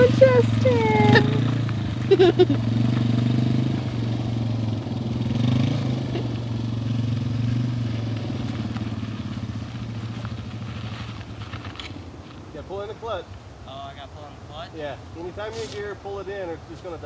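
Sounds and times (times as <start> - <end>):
motorcycle engine running: 0.0 - 12.4.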